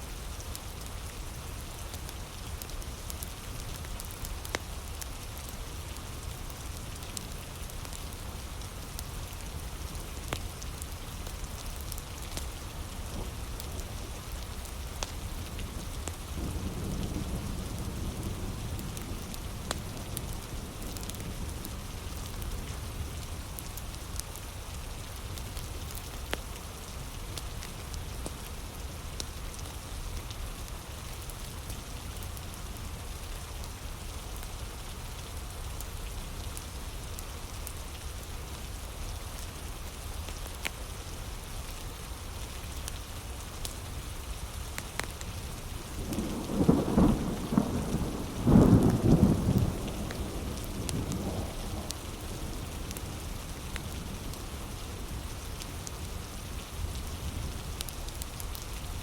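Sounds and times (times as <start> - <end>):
heavy rain: 0.0 - 59.0
thunder rumbling: 46.0 - 55.4.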